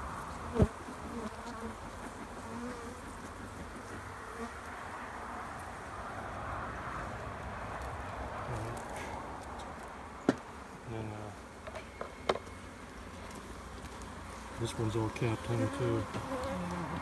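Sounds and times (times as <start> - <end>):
bees buzzing: 14.4 - 17.0.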